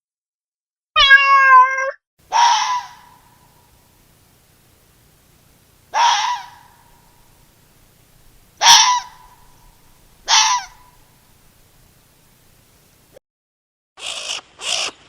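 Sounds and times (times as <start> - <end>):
animal raspy calls: 2.3 - 3.4, 5.9 - 7.2, 8.6 - 11.1, 14.0 - 15.0.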